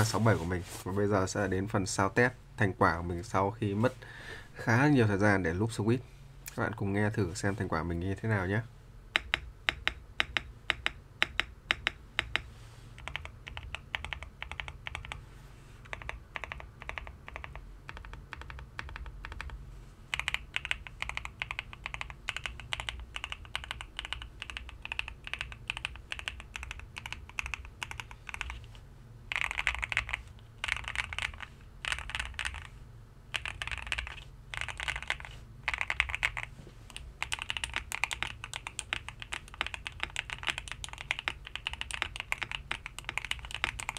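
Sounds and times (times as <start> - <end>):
mechanical keyboard typing: 9.2 - 12.4, 13.0 - 15.2, 15.8 - 28.6, 29.3 - 32.7, 33.3 - 43.9.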